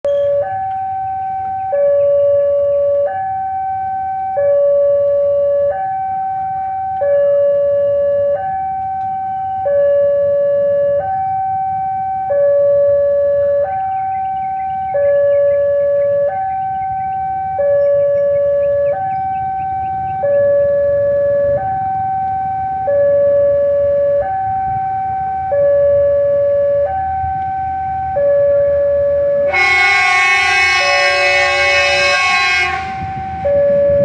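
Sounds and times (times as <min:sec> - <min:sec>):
two-tone hi-lo siren: 0:00.0 - 0:34.0
low rumble: 0:31.4 - 0:34.0.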